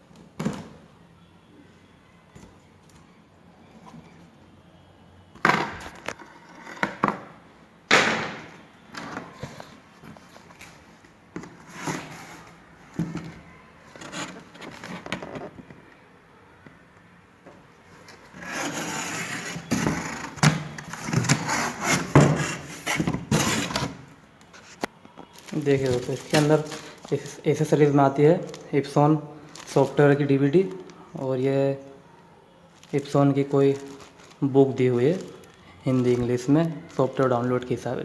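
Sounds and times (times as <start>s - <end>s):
scraping and rustling: 11.4s - 15.6s, 17.9s - 27.3s.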